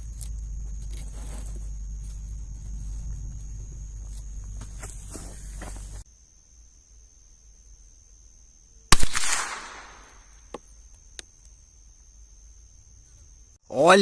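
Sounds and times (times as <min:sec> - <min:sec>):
rifle shot echoing: 0:08.9 - 0:10.3.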